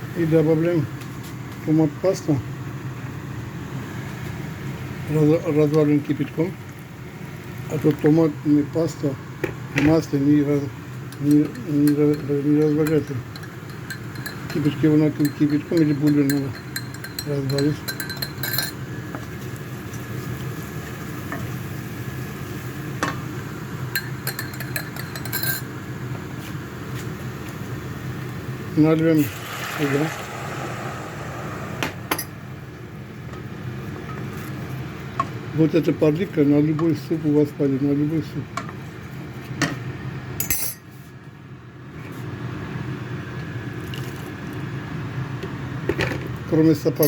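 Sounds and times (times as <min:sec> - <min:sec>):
steady low hum: 0:00.0 - 0:35.6
spoon clinking against a dish: 0:11.1 - 0:18.8, 0:24.0 - 0:25.7
low hum: 0:29.4 - 0:33.8.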